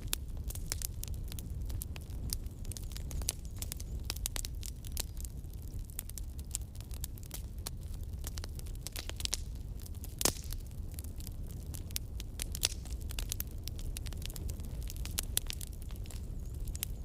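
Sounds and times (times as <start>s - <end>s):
burning wood crackling and popping: 0.0s - 17.0s
low rumble of flames: 0.0s - 17.0s.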